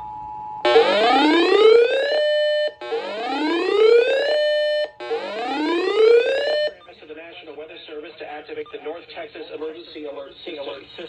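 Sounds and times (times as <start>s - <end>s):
two-tone alert signal: 0.7s - 6.8s
upward sweeping electronic alert tone: 0.7s - 6.8s.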